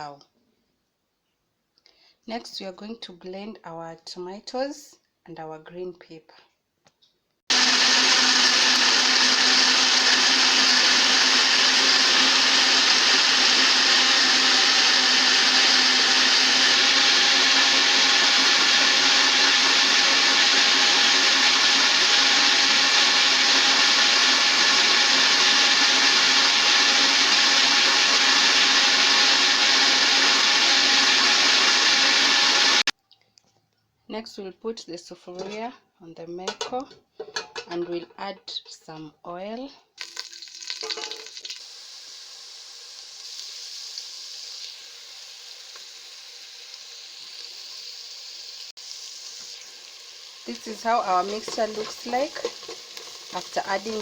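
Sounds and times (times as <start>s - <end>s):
electric blender running: 7.5s - 32.9s, 50.5s - 54.0s.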